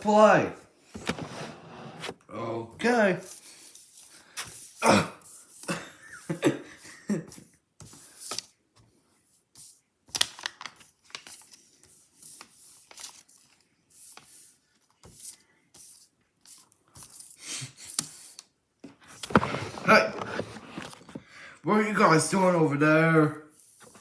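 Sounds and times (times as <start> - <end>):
light rubbing and scraping: 1.0 - 2.2.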